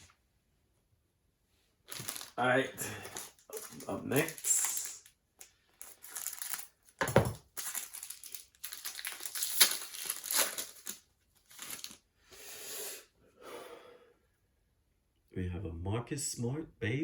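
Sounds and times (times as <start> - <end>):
wrapper tearing and crinkling: 1.8 - 12.0.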